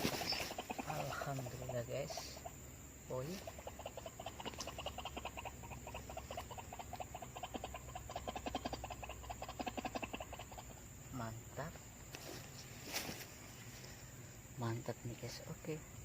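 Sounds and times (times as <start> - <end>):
repeated croaking animal calls: 0.0 - 12.0.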